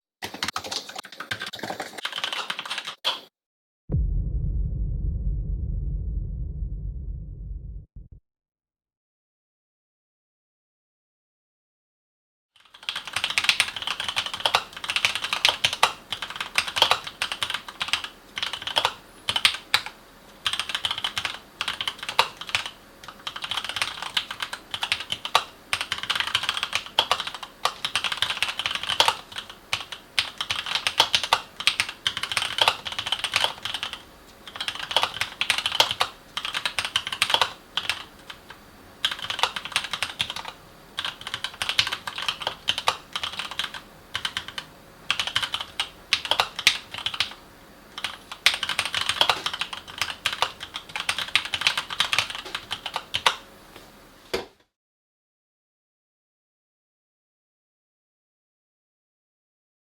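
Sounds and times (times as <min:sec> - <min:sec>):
typing on mechanical keyboard: 0:00.2 - 0:03.2, 0:12.6 - 0:47.4, 0:48.0 - 0:53.4.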